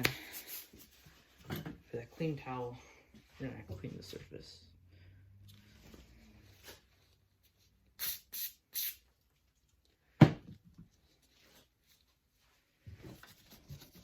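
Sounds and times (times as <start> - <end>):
short hissing sprays: 0.1 - 0.8, 8.0 - 9.0.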